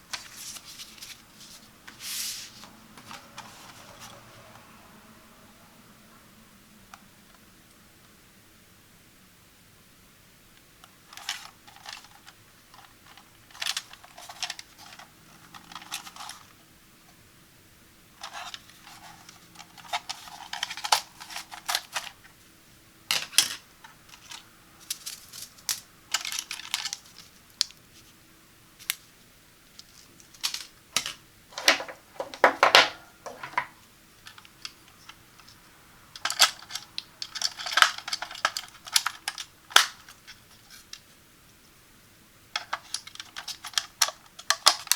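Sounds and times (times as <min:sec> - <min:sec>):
plastic handling clicks and crinkles: 0:00.0 - 0:02.0, 0:10.6 - 0:16.6, 0:18.2 - 0:22.4, 0:23.1 - 0:28.2, 0:28.8 - 0:41.2, 0:42.5 - 0:44.9.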